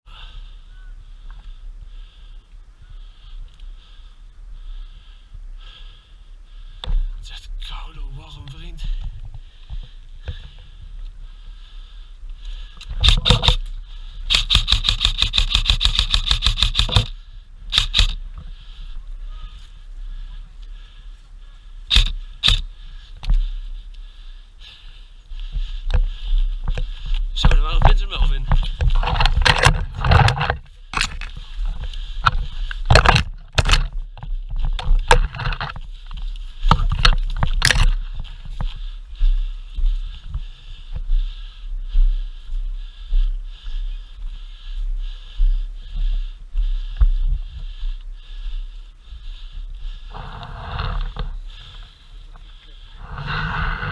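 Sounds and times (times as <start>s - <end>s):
footsteps: 12.3s - 53.9s
camera handling knocks and clicks: 12.9s - 13.6s, 14.3s - 17.1s, 28.7s - 31.3s, 32.2s - 33.9s
airsoft gun firing: 13.0s - 13.6s, 14.3s - 17.1s
wind rumble on microphone: 52.9s - 53.9s.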